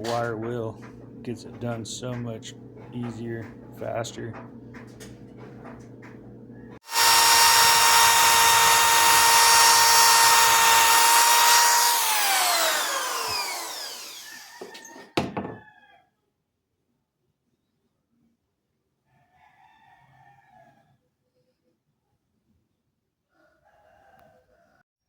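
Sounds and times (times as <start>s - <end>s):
wire wheel tool whining: 6.8s - 15.1s.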